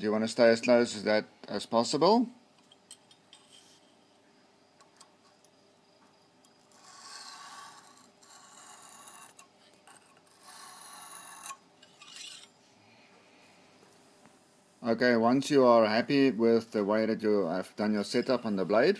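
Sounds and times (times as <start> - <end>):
hone rubbing on knife blade: 3.3 - 4.0, 6.7 - 12.6.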